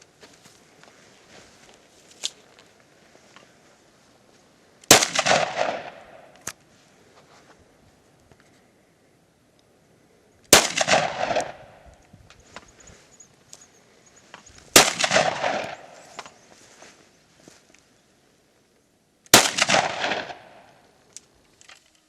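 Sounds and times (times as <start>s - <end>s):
rifle shots: 4.8s - 6.4s, 10.5s - 11.8s, 14.7s - 16.4s, 19.3s - 20.8s
rolling echo: 4.9s - 6.4s, 10.5s - 12.1s, 14.7s - 16.4s, 19.4s - 21.0s.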